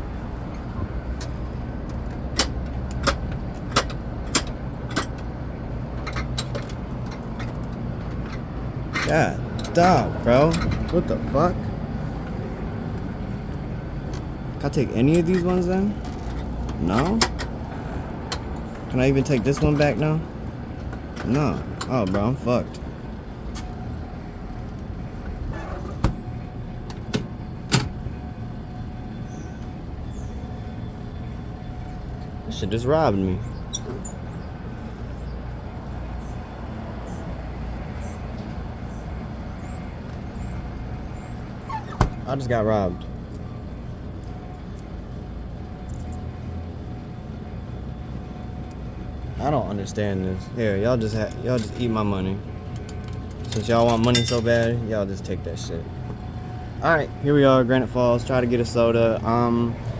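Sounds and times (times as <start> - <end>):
vending machine metallic clacks: 52.7 - 54.9.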